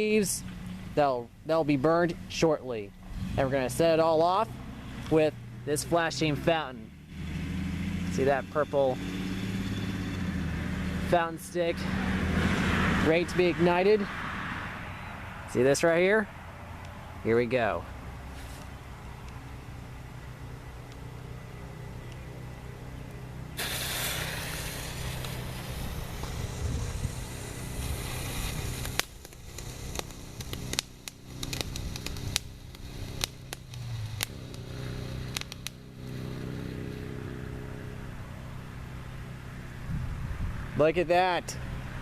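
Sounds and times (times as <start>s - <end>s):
firework pops and crackles: 23.6s - 36.2s
firework spraying with loud hiss: 23.6s - 36.6s.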